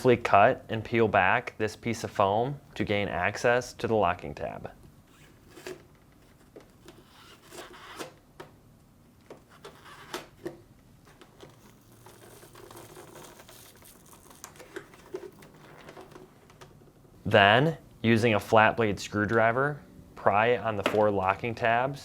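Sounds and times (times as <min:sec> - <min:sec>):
foam scraping and tearing: 0:05.1 - 0:08.2, 0:09.5 - 0:10.4, 0:11.1 - 0:16.4.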